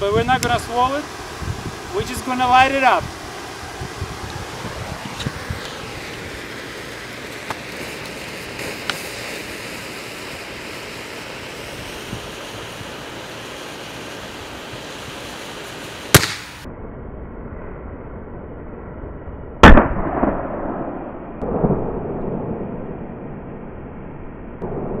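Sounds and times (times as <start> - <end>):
torch flame hissing: 0.0 - 16.7
battery bursting bang: 16.1 - 16.6, 19.6 - 21.8.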